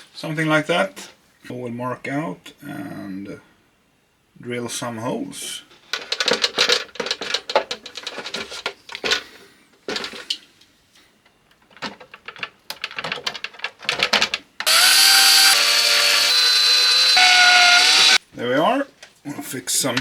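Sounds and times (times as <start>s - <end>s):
electric drill drilling plastic: 14.6s - 18.2s.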